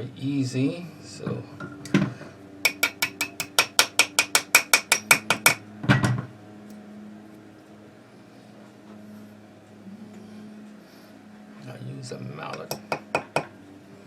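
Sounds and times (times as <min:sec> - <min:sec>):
mallet tapping metal parts: 0:02.7 - 0:06.2, 0:12.5 - 0:13.5.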